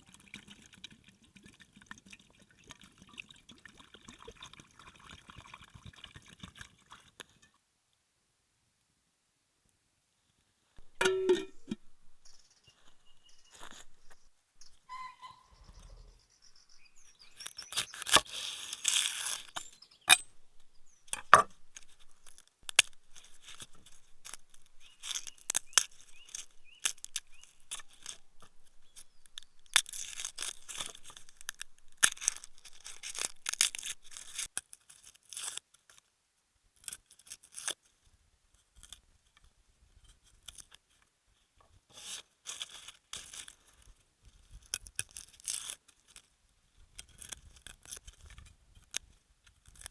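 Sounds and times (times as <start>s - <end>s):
crisp cutting and tearing: 17.1s - 19.7s, 21.7s - 36.0s, 36.8s - 37.8s, 42.0s - 43.8s, 44.4s - 46.3s, 47.0s - 49.0s, 49.6s - 49.9s.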